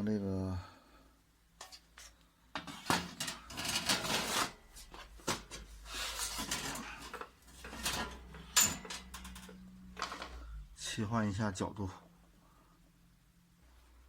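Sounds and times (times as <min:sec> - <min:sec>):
plastic and metal parts clattering: 0:01.6 - 0:10.5.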